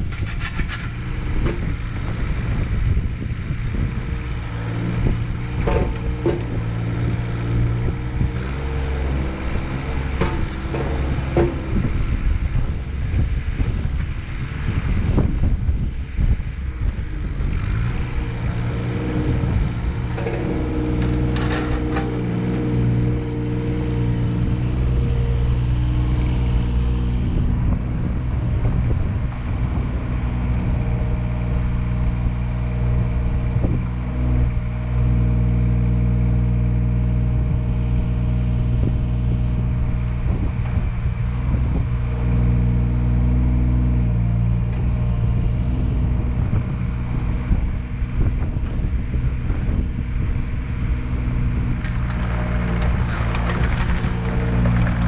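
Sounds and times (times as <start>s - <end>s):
excavator diesel engine running: 0.0s - 13.5s, 16.8s - 31.7s, 50.9s - 55.0s.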